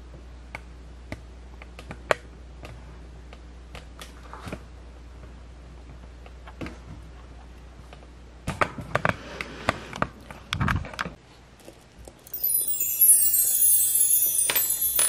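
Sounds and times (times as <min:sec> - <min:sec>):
high chiming jingle: 0:12.3 - 0:15.0.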